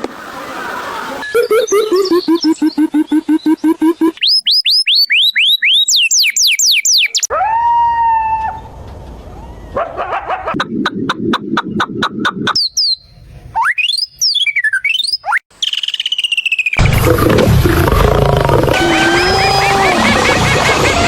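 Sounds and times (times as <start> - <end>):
sweeping chirps and whistles: 1.2 - 7.3, 11.5 - 16.9
whistling bird-like call: 1.2 - 7.3, 13.6 - 16.8
falling trill: 16.8 - 21.0.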